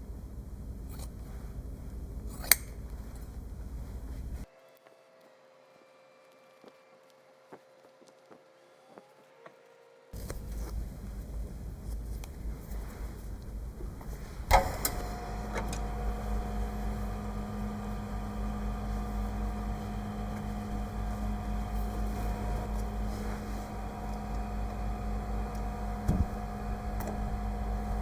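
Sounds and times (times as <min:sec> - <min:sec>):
machine humming: 0:03.4 - 0:11.8, 0:14.5 - 0:28.0.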